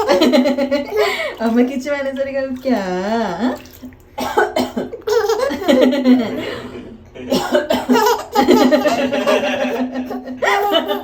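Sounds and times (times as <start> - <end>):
woman coughing: 4.2 - 5.6, 7.3 - 8.2
baby laughing: 5.0 - 6.0, 7.9 - 9.4.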